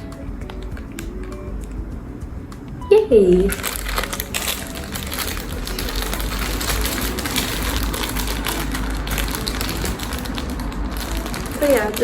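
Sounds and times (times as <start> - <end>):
small objects clicking and rustling: 3.5 - 12.0.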